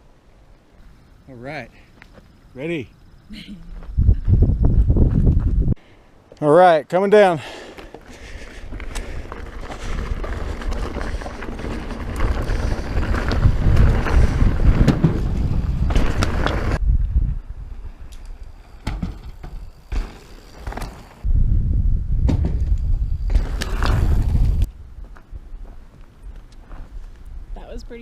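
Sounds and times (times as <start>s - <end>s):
wind buffeting microphone: 3.7s - 5.8s, 8.1s - 18.6s, 21.2s - 28.0s
mountain bike rattling on rocks: 7.8s - 16.9s, 18.4s - 21.2s, 22.3s - 24.7s.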